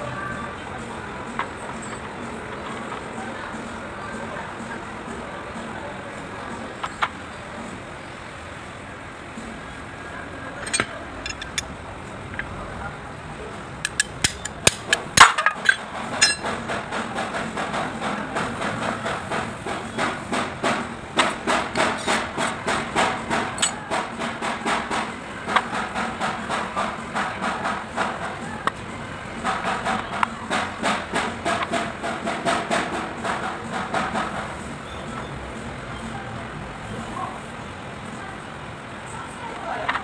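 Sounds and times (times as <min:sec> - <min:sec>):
hammer tapping on metal: 0:10.6 - 0:11.7, 0:13.8 - 0:28.8.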